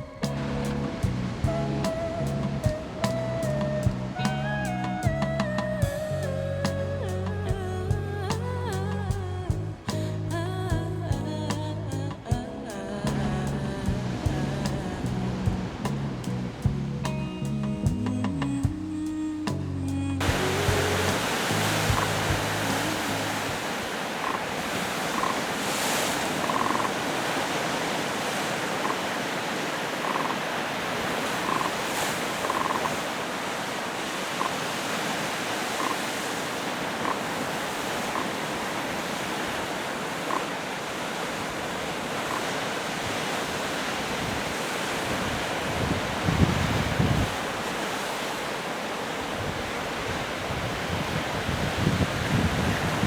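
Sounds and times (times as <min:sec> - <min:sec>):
waves washing in: 0:00.0 - 0:19.4, 0:20.1 - 0:53.0
wind buffeting microphone: 0:00.0 - 0:33.6, 0:41.3 - 0:48.4, 0:49.1 - 0:53.0.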